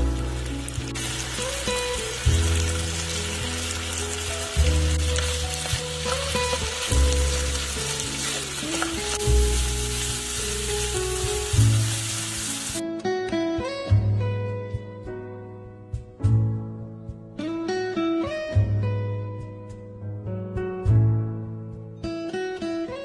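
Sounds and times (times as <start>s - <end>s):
food frying in hot oil: 0.0s - 12.8s
background music with bass: 0.0s - 22.3s.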